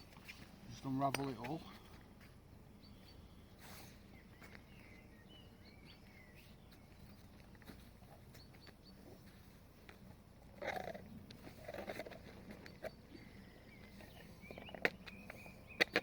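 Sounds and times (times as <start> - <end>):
faint bird chirps: 2.7 - 9.6, 10.6 - 16.0.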